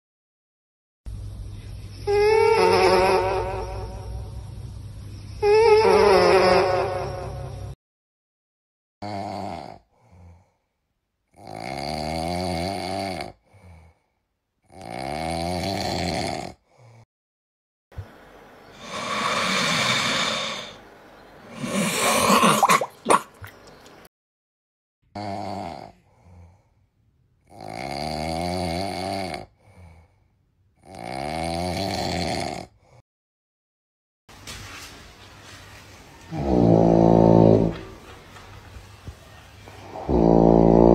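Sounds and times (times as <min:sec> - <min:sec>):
loud snoring: 0:09.0 - 0:10.5, 0:11.3 - 0:14.0, 0:14.6 - 0:17.1, 0:18.8 - 0:20.8, 0:21.5 - 0:23.2, 0:25.1 - 0:26.6, 0:27.4 - 0:30.1, 0:30.8 - 0:33.0, 0:36.3 - 0:37.9, 0:39.8 - 0:40.9.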